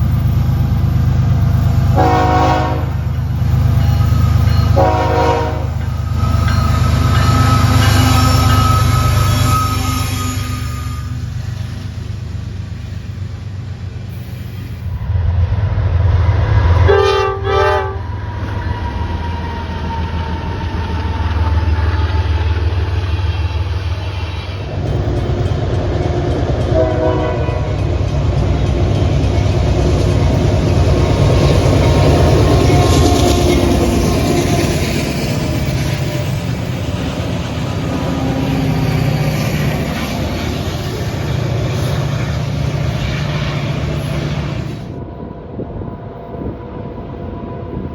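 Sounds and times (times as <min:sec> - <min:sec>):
passing train rumble: 0:00.0 - 0:47.9
train horn blasts: 0:01.9 - 0:03.1, 0:03.8 - 0:11.3, 0:16.7 - 0:18.5, 0:26.6 - 0:28.0.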